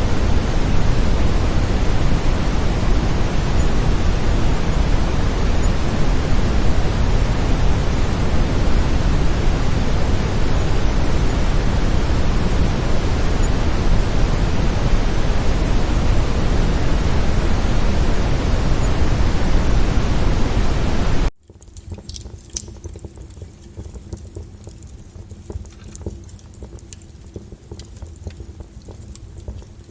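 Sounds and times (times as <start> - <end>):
steady brown noise: 0.0 - 29.9
crackling fire with pops: 21.4 - 29.9.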